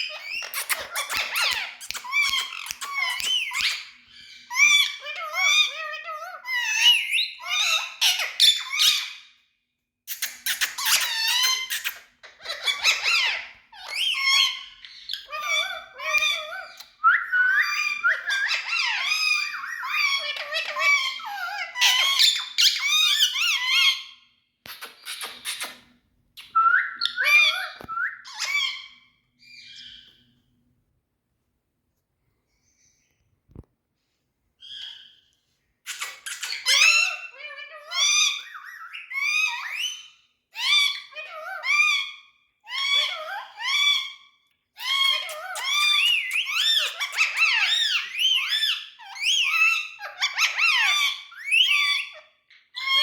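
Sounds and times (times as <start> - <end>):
parrot squeaky talking calls: 0.0 - 9.2, 10.1 - 30.2, 35.9 - 53.0
parrot chattering: 0.1 - 3.9.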